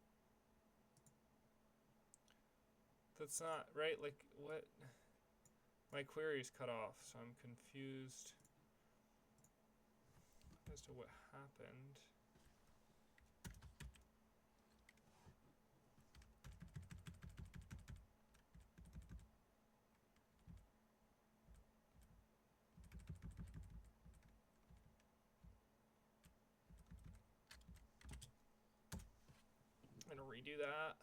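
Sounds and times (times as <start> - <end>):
typing on computer keyboard: 13.4 - 14.0, 16.1 - 19.2, 22.8 - 25.0, 26.7 - 28.3.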